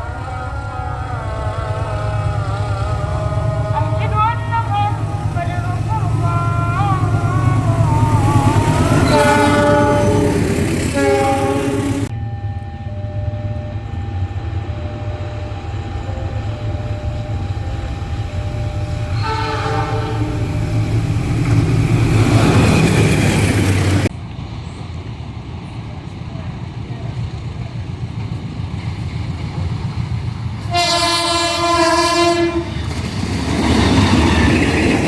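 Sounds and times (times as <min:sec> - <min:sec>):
locomotive air horn chord: 0:00.0 - 0:24.1, 0:30.6 - 0:32.9
locomotive rumbling: 0:00.0 - 0:35.0
train wheels on rails: 0:00.0 - 0:35.0.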